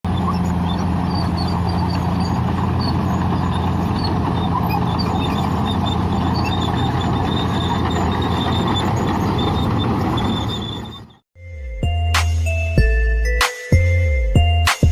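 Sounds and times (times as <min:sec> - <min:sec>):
bulldozer diesel engine running: 0:00.0 - 0:11.2
short high squeaks: 0:00.1 - 0:11.2.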